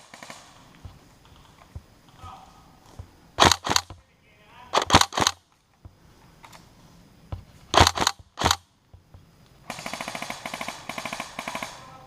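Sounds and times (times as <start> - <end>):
airsoft gun single shots: 3.4 - 4.0, 4.7 - 5.4, 7.7 - 8.6
full-auto airsoft rattle: 3.4 - 4.0, 4.7 - 5.4, 7.7 - 8.6, 9.7 - 12.0.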